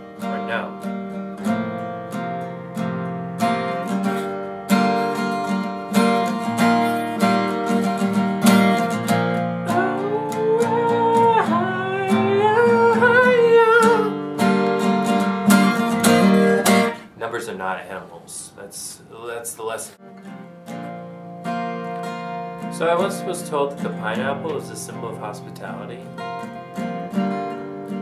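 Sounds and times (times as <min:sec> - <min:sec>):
acoustic guitar strumming: 0:00.0 - 0:28.0
person singing wordlessly: 0:09.6 - 0:14.3.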